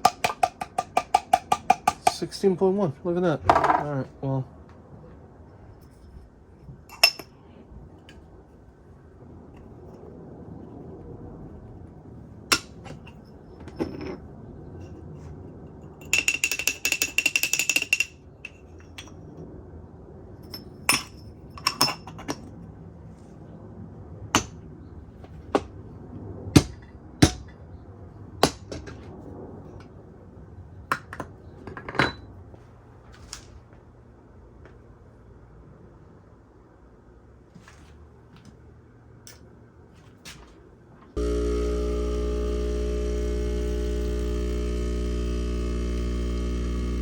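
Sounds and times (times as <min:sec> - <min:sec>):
coffee gear clinking and knocking: 0:00.0 - 0:02.2, 0:06.9 - 0:07.3, 0:16.0 - 0:19.1, 0:20.5 - 0:22.5.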